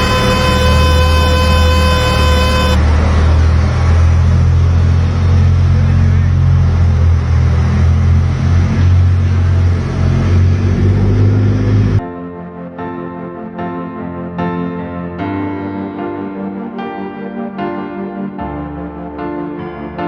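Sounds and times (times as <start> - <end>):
steady horn tone: 0.0 - 3.0
rushing noise: 0.0 - 4.0.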